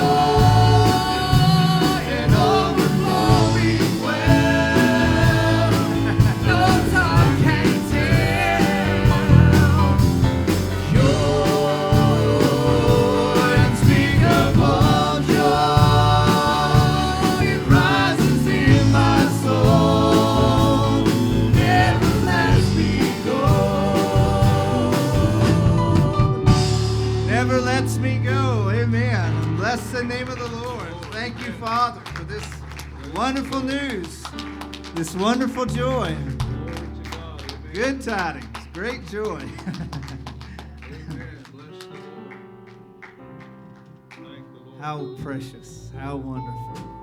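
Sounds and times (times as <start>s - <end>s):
person singing: 0.0s - 10.2s, 10.9s - 27.6s
band playing with steady beat: 0.0s - 28.6s.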